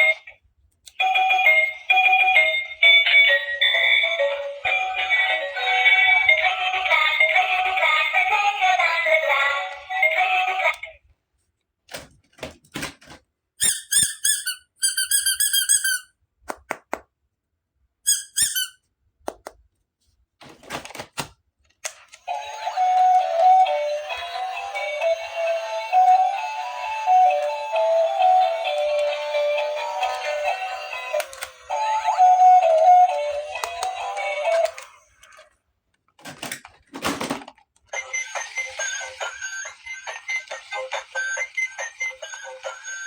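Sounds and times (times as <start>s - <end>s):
electronic toy tinny song: 22.2s - 35.0s, 38.0s - 43.0s.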